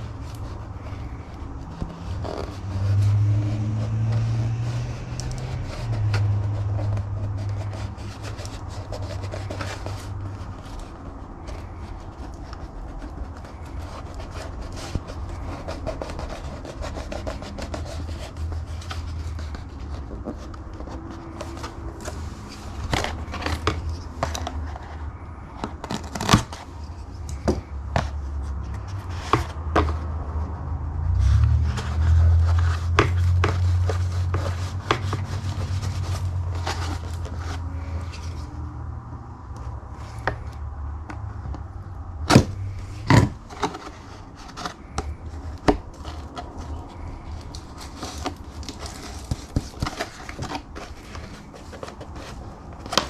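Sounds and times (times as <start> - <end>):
tape being pulled and torn: 0.0 - 24.8, 25.6 - 30.1, 31.2 - 38.5.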